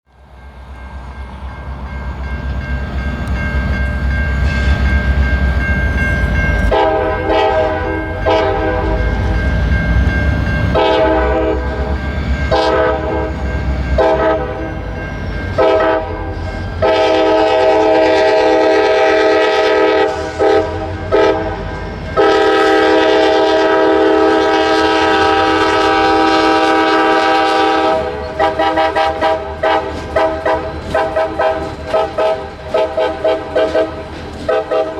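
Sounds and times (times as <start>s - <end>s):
diesel locomotive engine rumbling: 0.0s - 34.9s
locomotive air horn blasts: 6.7s - 9.1s, 10.8s - 13.4s, 14.0s - 14.7s, 15.6s - 34.9s.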